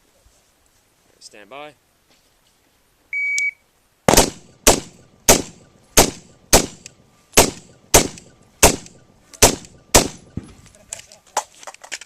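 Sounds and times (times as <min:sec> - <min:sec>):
shot timer beep: 0:03.2 - 0:03.6
rifle shots: 0:04.1 - 0:10.7.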